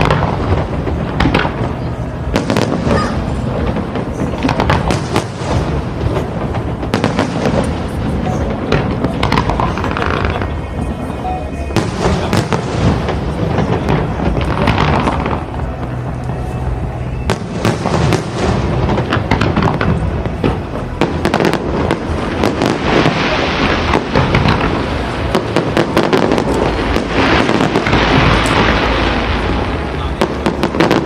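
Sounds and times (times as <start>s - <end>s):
fireworks bursting and crackling: 0.0s - 31.0s.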